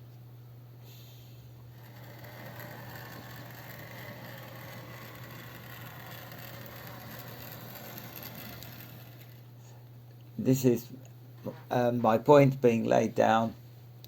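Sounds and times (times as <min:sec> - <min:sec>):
model train motor whir: 0:01.6 - 0:09.8.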